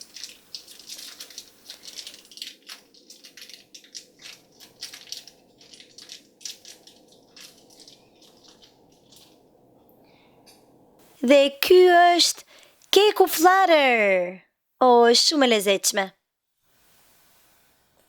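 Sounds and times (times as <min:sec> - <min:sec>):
plastic bag crinkling: 0:00.0 - 0:09.8.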